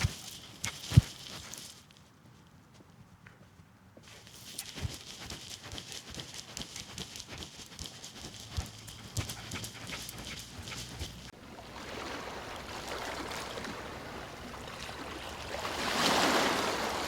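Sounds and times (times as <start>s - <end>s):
footsteps on hard path: 0.0s - 11.3s.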